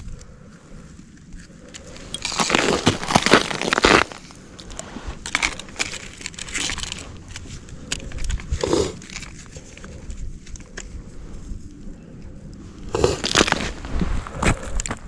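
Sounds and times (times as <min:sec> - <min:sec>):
snow and ice crunching: 0:01.4 - 0:11.8, 0:12.6 - 0:15.0.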